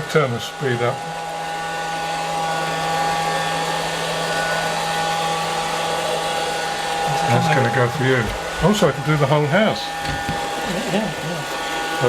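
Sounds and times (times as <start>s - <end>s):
robot vacuum motor whirring: 0.0s - 12.0s.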